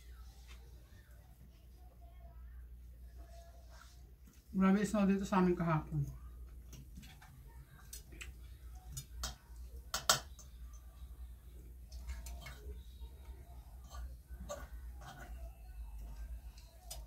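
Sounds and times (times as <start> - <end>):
cutlery clicking on plate: 8.9 - 10.5.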